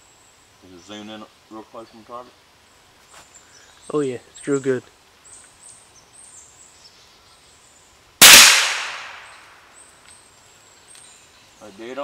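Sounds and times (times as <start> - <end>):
rifle shot: 8.2 - 9.6.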